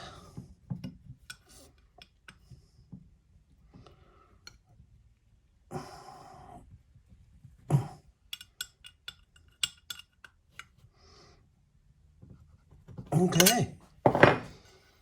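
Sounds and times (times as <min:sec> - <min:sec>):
metal hand tools rummaged: 0:13.3 - 0:14.6.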